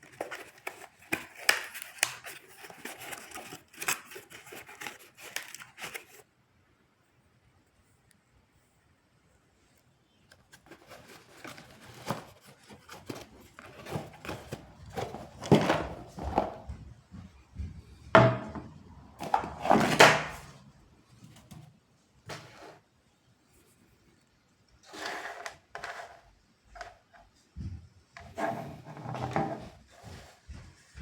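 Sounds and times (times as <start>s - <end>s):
objects knocking on hard surface: 18.1s - 20.4s.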